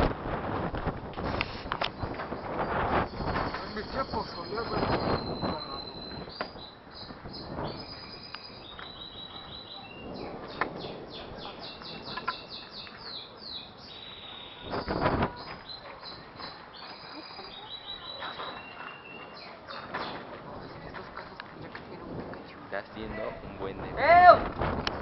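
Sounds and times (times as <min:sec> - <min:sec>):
small bird chirping: 0:01.9 - 0:21.4.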